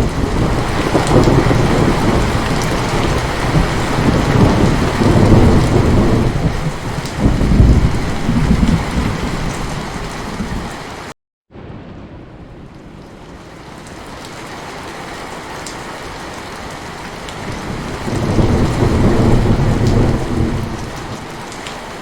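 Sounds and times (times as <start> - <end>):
rolling thunder: 0.0 - 10.7, 11.5 - 14.2, 17.4 - 21.5
heavy rain: 0.0 - 22.0.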